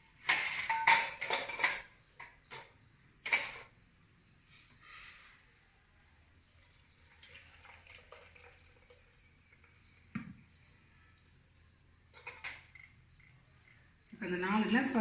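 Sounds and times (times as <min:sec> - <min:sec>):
clinks: 0:00.3 - 0:03.8, 0:11.2 - 0:13.6
light drips: 0:06.6 - 0:10.3.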